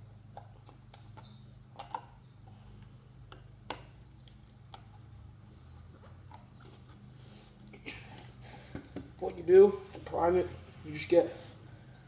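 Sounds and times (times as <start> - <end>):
low steady hum: 0.0 - 12.0
small objects clicking and tapping: 2.8 - 5.0.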